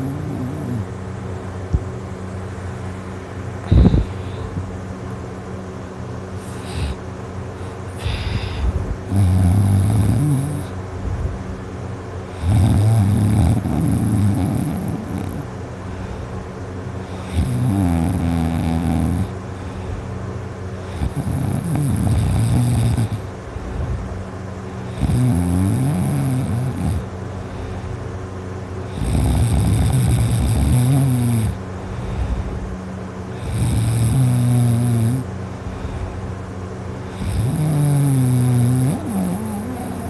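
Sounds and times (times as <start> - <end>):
person snoring: 0.0 - 0.9, 3.6 - 4.6, 6.4 - 7.0, 7.6 - 10.8, 12.4 - 15.5, 17.1 - 19.3, 20.8 - 23.2, 24.9 - 27.1, 28.9 - 32.2, 33.4 - 35.3, 37.1 - 40.0
quiet breathing: 2.8 - 4.8, 6.3 - 8.9, 19.3 - 21.1, 27.0 - 28.2, 31.5 - 33.6, 35.6 - 37.2.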